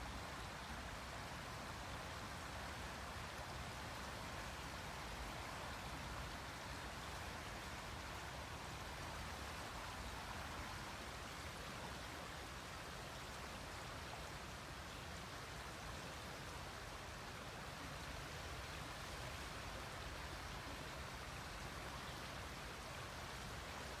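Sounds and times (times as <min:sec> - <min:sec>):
river water flowing: 0:00.0 - 0:24.0.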